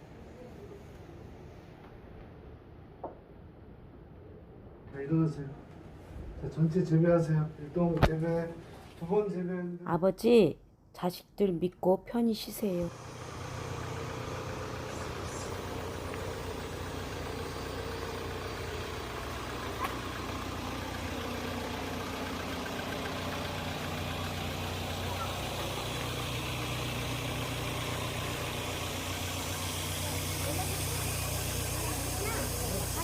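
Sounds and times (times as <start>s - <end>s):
machine humming: 12.8s - 33.0s
faint voices: 29.4s - 33.0s.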